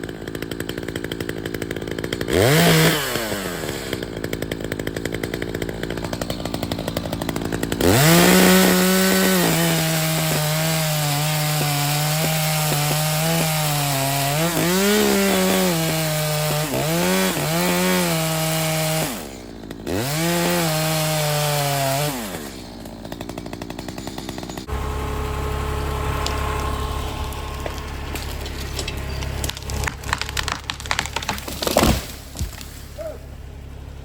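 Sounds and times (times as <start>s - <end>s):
chainsaw cutting wood: 0.0s - 34.0s
low steady engine hum: 24.7s - 30.9s, 32.2s - 34.0s.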